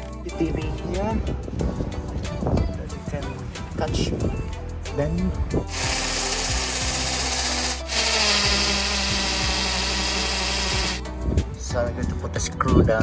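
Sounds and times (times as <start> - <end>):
electric drill drilling into wall: 5.7 - 11.0.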